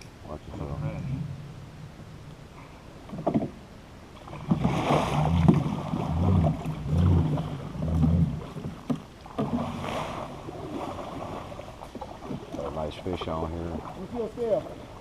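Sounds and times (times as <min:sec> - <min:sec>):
water splashing against kayak: 0:03.0 - 0:15.0
low thumps: 0:04.4 - 0:09.7.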